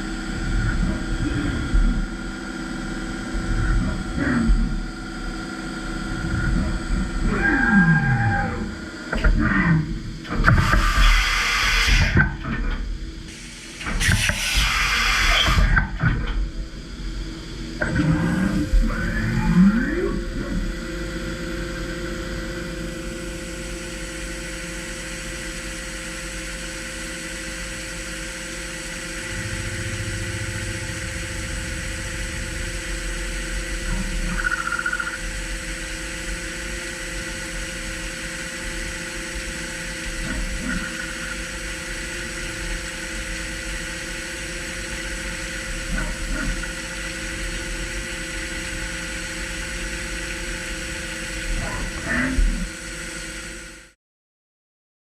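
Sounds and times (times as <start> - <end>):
milling machine whine: 0.0 - 54.0
low hum: 16.0 - 24.1, 28.0 - 48.8.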